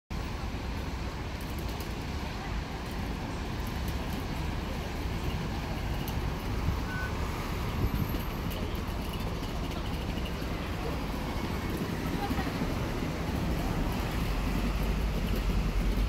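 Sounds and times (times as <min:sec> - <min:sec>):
train rumbling: 0:00.1 - 0:16.0
brief high tone: 0:06.8 - 0:07.2.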